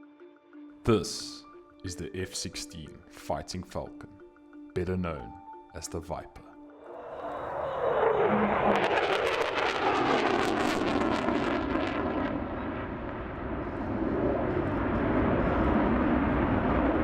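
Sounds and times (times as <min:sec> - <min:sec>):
fighter jet roaring past: 0:06.8 - 0:17.0.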